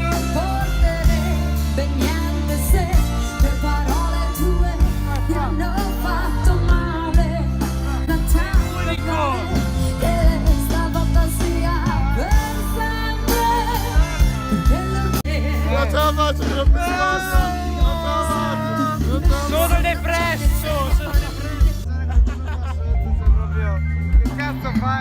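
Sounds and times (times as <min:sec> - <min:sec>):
pop music with singing: 0:00.0 - 0:25.0.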